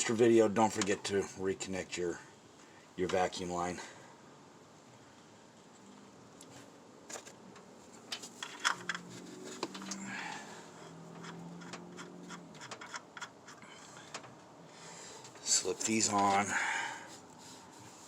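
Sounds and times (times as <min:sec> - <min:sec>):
hands clicking tapping and scraping: 0:11.1 - 0:14.4.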